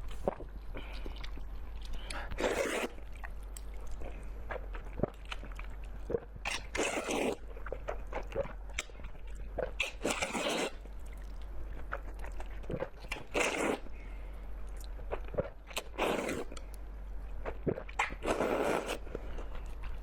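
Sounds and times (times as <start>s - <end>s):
biting and chewing: 0.0s - 13.9s.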